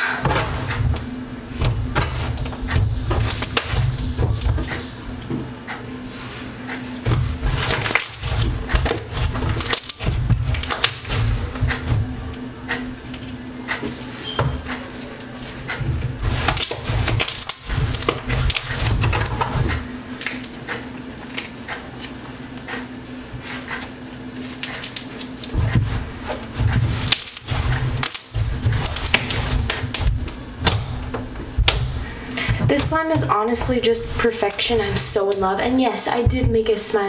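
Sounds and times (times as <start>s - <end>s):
dull thumps: 25.5s - 35.2s, 36.1s - 36.7s.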